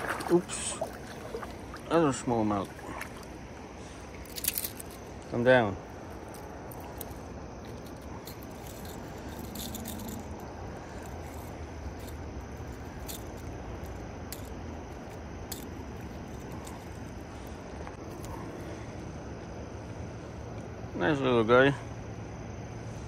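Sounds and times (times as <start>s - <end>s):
river water rushing: 0.0s - 3.7s
light clicks and rattles: 4.2s - 5.4s, 6.2s - 18.4s.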